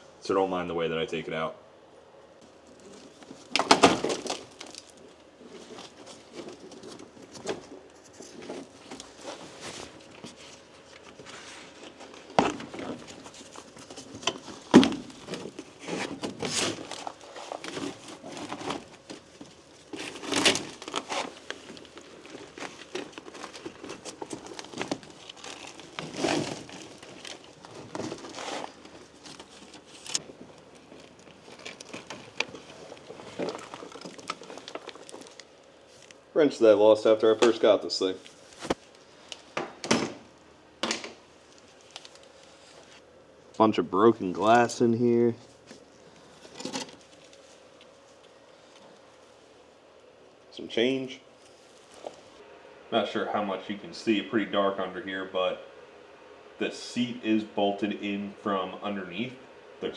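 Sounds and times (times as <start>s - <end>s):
matting crinkling and rustling: 2.4s - 36.3s, 37.6s - 43.1s.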